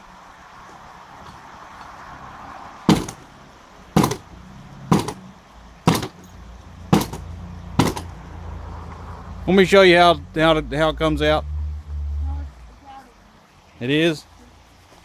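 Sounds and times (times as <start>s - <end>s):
sledgehammer striking wood: 2.9s - 3.3s, 4.0s - 4.3s, 4.9s - 5.2s, 5.9s - 6.3s, 6.9s - 8.1s.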